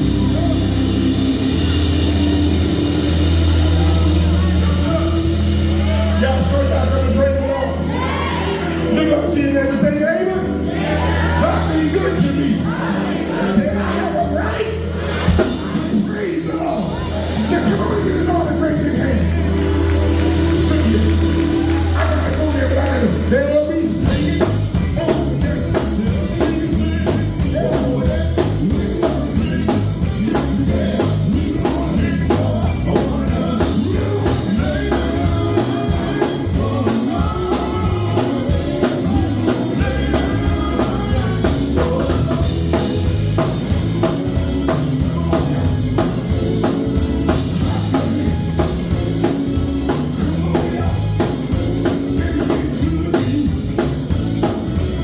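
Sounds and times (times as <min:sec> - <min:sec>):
live gospel band playing: 0:00.0 - 0:55.0
singing: 0:20.3 - 0:43.0, 0:47.3 - 0:54.2.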